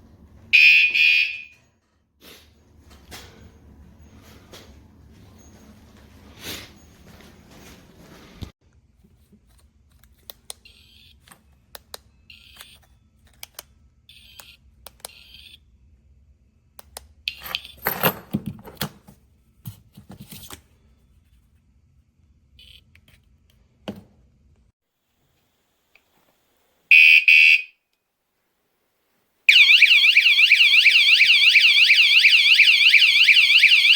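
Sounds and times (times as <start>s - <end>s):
alarm high-pitched chirps: 29.5s - 33.9s.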